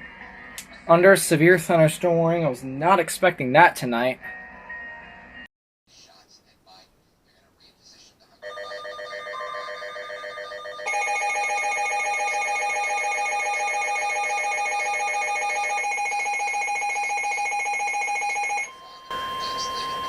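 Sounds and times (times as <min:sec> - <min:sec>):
electronic alert alarms trilling: 0:08.4 - 0:20.0.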